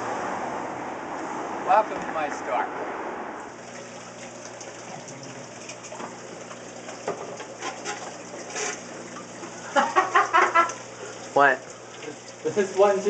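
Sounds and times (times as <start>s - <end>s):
aquarium pumps humming: 0.0s - 13.0s
water trickling and gurgling: 3.4s - 13.0s.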